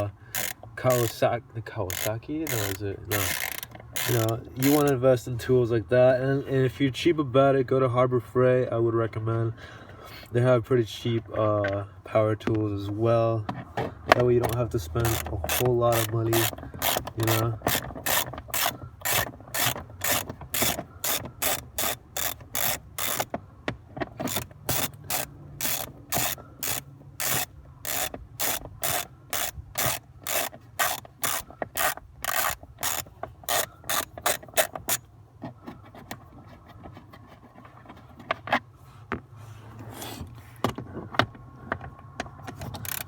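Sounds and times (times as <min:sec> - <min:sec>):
rubbing and handling noise: 0:00.0 - 0:05.2, 0:11.0 - 0:43.0
hand ratchet clicking: 0:00.3 - 0:01.2, 0:01.8 - 0:05.0, 0:14.1 - 0:23.4, 0:24.1 - 0:35.1, 0:42.6 - 0:43.0.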